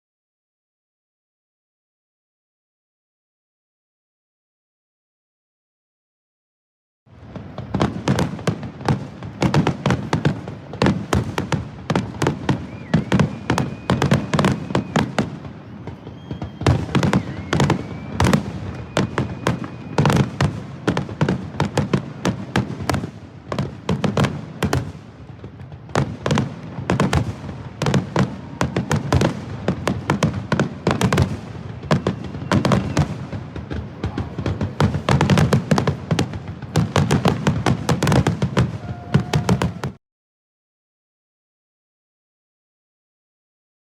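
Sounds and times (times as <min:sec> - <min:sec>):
faint firework whistling: 0:07.3 - 0:40.0.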